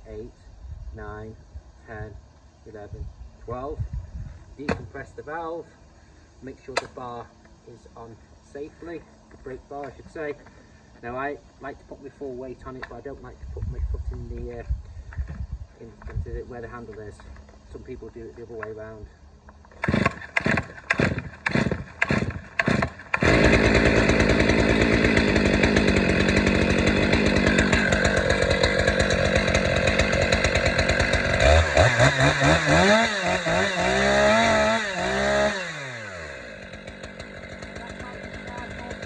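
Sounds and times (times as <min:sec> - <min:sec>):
chainsaw engine running and revving: 0:19.8 - 0:39.0.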